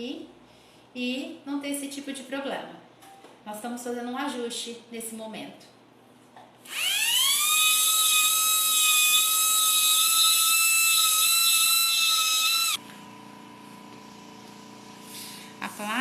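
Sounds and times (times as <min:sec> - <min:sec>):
dental drill whining: 0:06.7 - 0:12.8.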